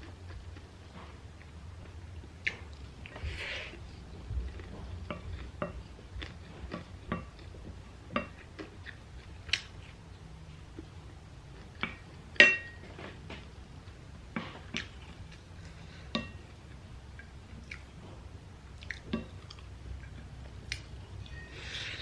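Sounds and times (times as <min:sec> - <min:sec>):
chewing: 0:00.0 - 0:10.0, 0:14.4 - 0:22.0
utensil clinking against dish: 0:11.8 - 0:12.9.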